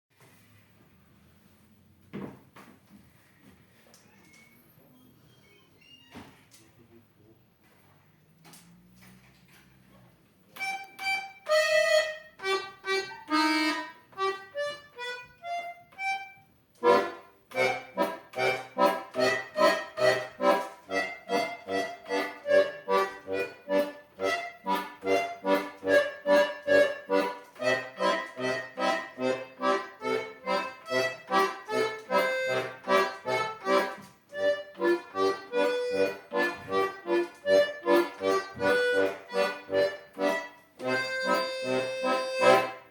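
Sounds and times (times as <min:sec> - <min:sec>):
accordion playing: 0:10.6 - 0:42.9.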